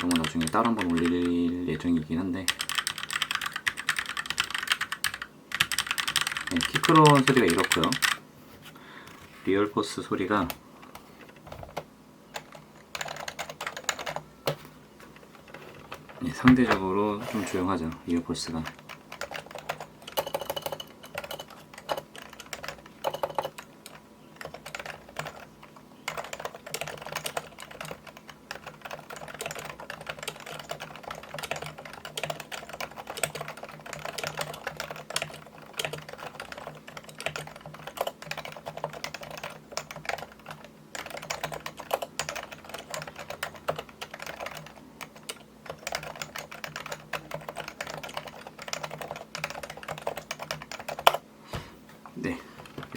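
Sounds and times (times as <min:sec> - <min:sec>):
typing on computer keyboard: 0:00.0 - 0:01.6, 0:02.5 - 0:08.2, 0:12.4 - 0:14.6, 0:18.6 - 0:51.2.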